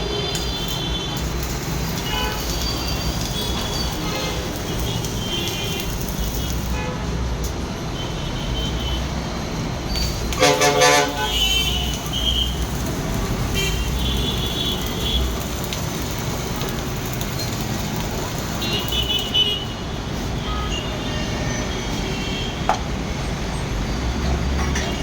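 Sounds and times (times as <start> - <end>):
road traffic rumbling: 0.0 - 25.0
vehicle horn: 2.0 - 5.9, 10.4 - 12.6.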